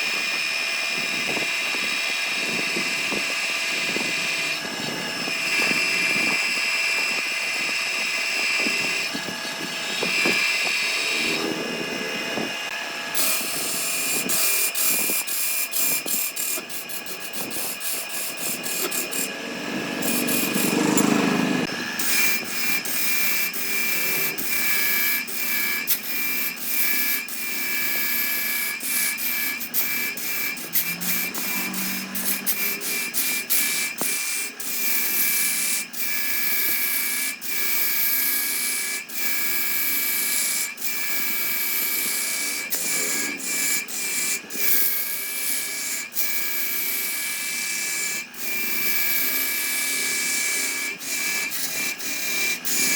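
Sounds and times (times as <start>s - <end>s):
woodworking power tool whining: 0.0s - 52.9s
rapid scraping clicks: 13.2s - 34.4s.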